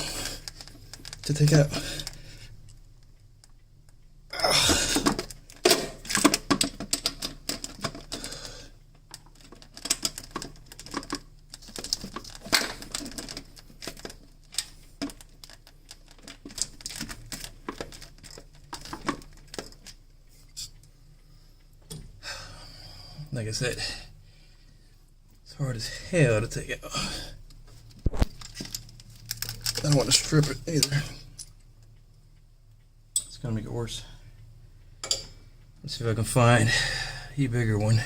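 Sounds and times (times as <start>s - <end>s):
metal tools clicking and clanking: 35.0s - 35.4s.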